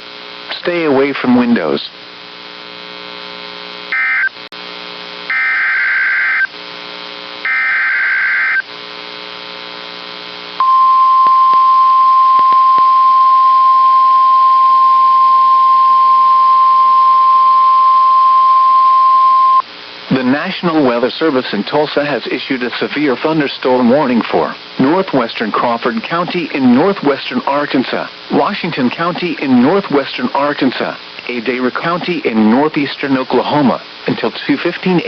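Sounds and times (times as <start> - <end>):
steady warning alarm tone: 3.9 - 4.4, 5.3 - 6.5, 7.4 - 8.6.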